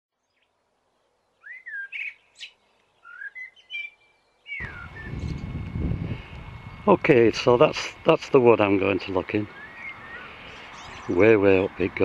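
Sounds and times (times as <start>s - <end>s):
songbird singing: 0.2s - 12.0s
steady rumbling outdoor noise: 4.6s - 12.0s.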